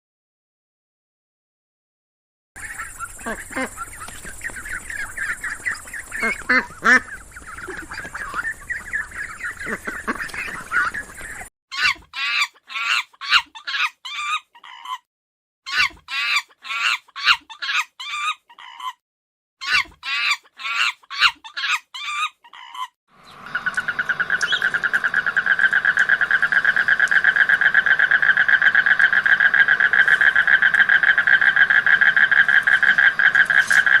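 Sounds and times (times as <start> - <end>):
fast-pulsing animal trill: 2.6 - 11.5, 23.6 - 34.0
animal calls repeated rapidly: 2.6 - 15.1, 15.7 - 19.0, 19.6 - 34.0.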